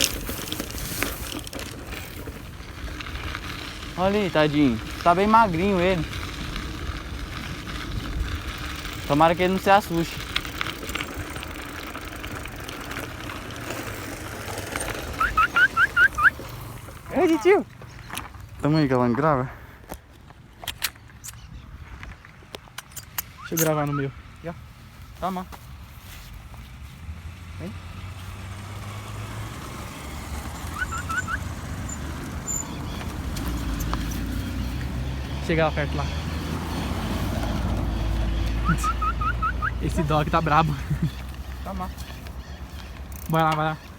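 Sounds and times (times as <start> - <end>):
freewheel ticking: 0.0 - 17.2
street traffic rumble: 0.0 - 43.9
wind and road noise: 0.0 - 43.9
bird chirping: 15.0 - 18.9, 23.2 - 24.2, 30.3 - 43.9
short rising chirps: 15.1 - 16.5, 30.7 - 32.7, 38.6 - 39.8.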